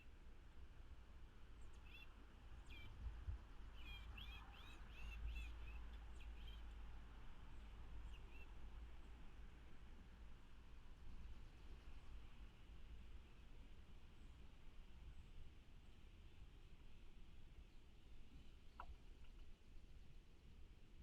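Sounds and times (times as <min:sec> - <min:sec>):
faint bird chirps: 0:01.6 - 0:03.0, 0:03.7 - 0:06.8, 0:08.0 - 0:08.6.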